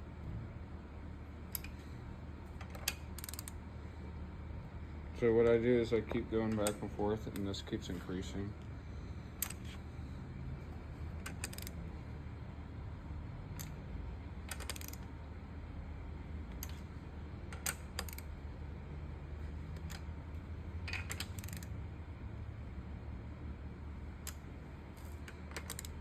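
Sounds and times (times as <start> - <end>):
steady low hum: 0.0 - 26.0
ratchet wrench clicking: 1.5 - 1.8, 2.7 - 3.6, 9.4 - 9.8, 11.2 - 11.8, 14.5 - 15.0, 17.5 - 18.3, 20.9 - 21.7, 25.2 - 26.0.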